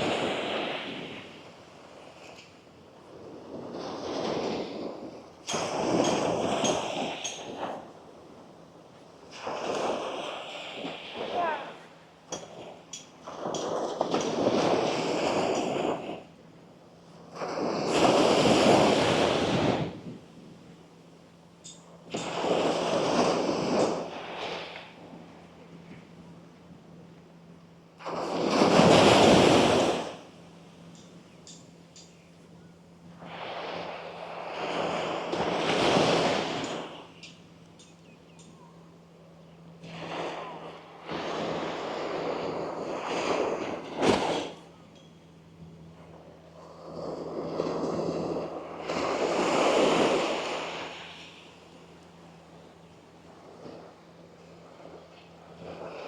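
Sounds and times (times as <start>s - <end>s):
waves breaking on a beach: 0.0s - 56.0s.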